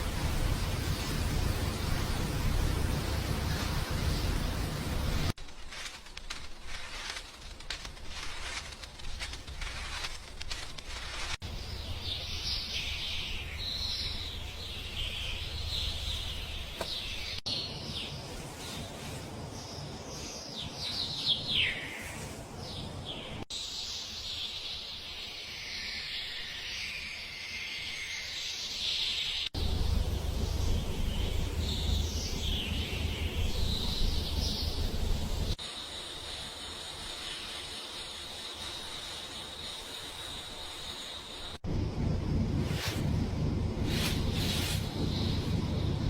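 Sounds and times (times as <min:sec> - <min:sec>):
small birds chirping: 0:08.0 - 0:29.5, 0:30.2 - 0:41.5
low background rumble: 0:29.6 - 0:35.6, 0:41.6 - 0:46.0.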